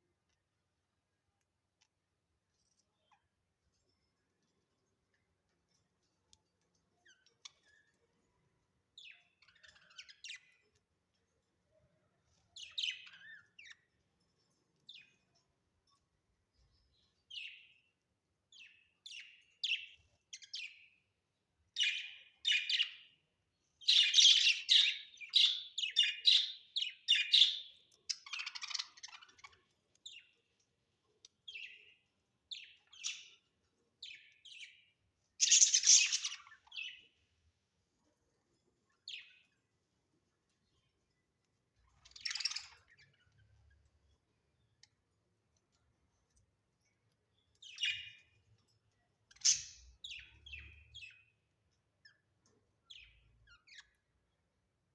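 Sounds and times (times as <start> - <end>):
budgerigars chirping: 35.4 - 37.0.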